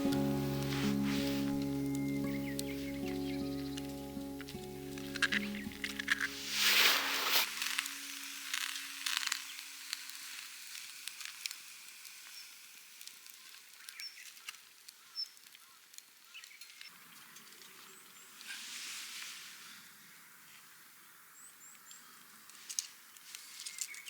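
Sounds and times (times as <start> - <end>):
background music: 0.0 - 8.8
campfire crackling and popping: 0.0 - 16.8.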